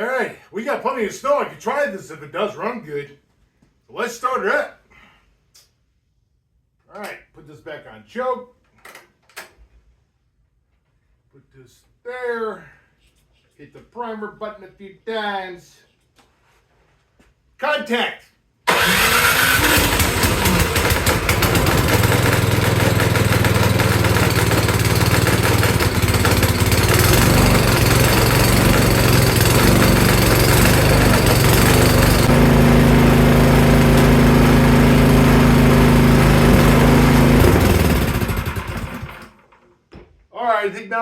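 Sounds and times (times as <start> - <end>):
snowblower engine running: 18.7 - 39.4.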